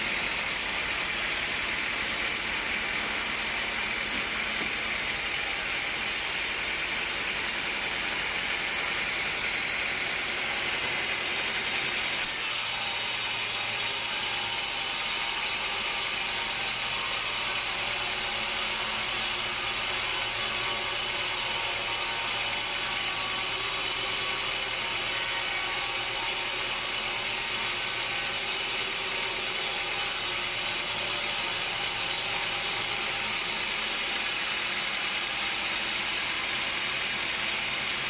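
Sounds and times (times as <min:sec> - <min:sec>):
sawmill machinery running: 0:00.0 - 0:38.0.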